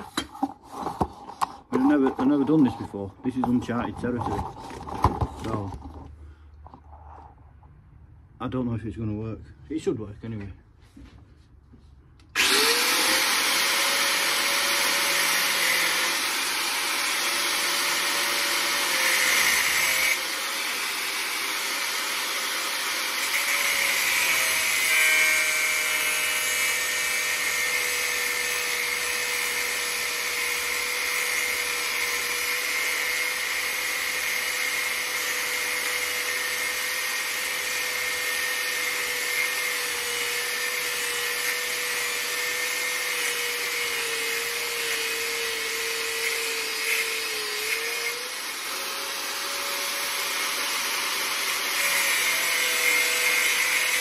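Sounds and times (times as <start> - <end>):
angle grinder cutting metal: 12.4 - 54.0.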